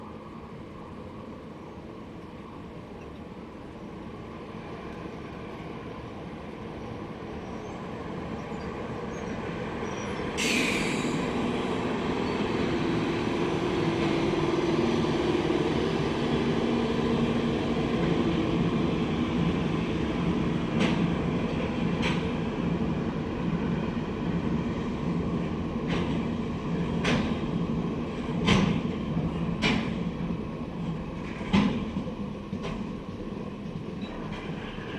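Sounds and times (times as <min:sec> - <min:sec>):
train wheels rumbling on rail: 0:00.0 - 0:34.9
hiss-like burst: 0:10.4 - 0:11.4.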